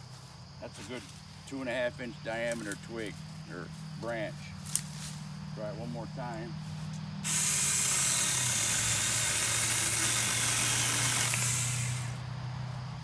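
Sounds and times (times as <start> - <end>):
mini chainsaw cutting branch: 4.6 - 5.3, 6.9 - 12.3.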